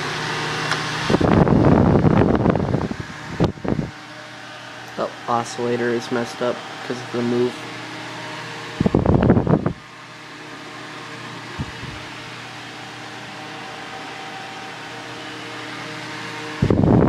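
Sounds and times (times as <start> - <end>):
faint motor hum: 0.0 - 17.0
fan whirring: 0.0 - 17.0
wind buffeting microphone: 1.1 - 4.0, 8.8 - 9.8.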